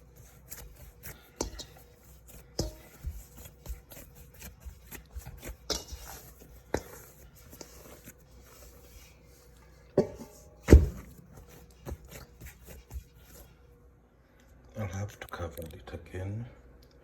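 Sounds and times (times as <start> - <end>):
hands pressing bread dough: 0.0 - 13.5.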